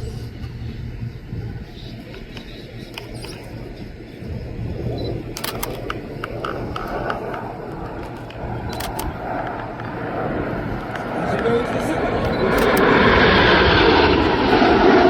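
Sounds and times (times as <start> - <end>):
jet engine rumble: 0.0 - 15.0
sharp clicks: 2.1 - 3.7, 5.0 - 9.9, 12.2 - 13.1.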